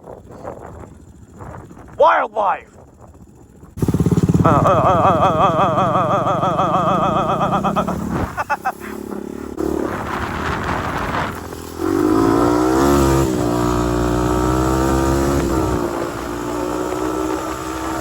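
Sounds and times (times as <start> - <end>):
quad bike engine running: 0.0 - 2.2, 2.8 - 18.0
wind rushing over microphone: 0.0 - 5.1, 9.5 - 18.0.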